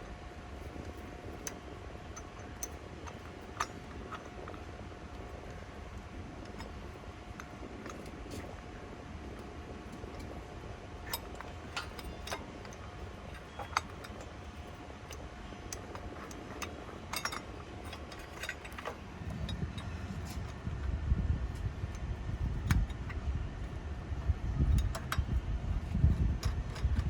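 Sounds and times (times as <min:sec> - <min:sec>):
small metal parts clinking: 0:11.0 - 0:20.6
low rumbling noise: 0:17.2 - 0:27.0.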